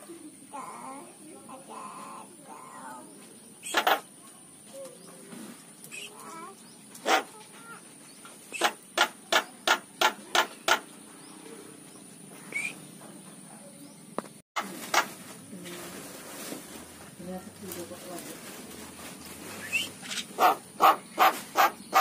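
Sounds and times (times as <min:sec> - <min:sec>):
bird clicking calls: 0:03.6 - 0:04.1, 0:05.8 - 0:07.4, 0:08.5 - 0:11.0, 0:19.6 - 0:22.0
faint bird warbling: 0:05.9 - 0:07.8, 0:12.4 - 0:12.8.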